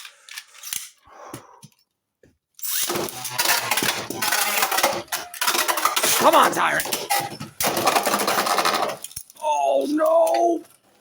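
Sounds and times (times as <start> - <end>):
spinning tops clashing in plastic arena: 2.6 - 9.3.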